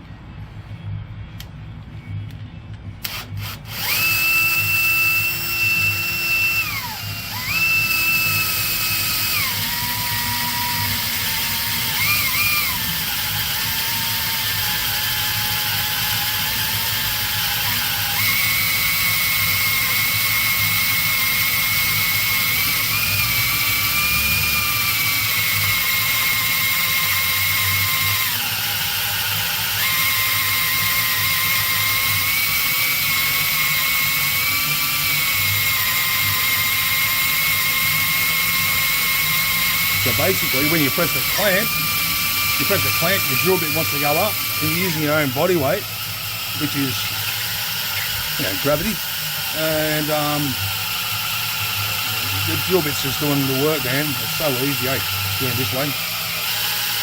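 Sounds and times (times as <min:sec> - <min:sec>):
electric drill boring into steel: 0:03.0 - 0:57.0.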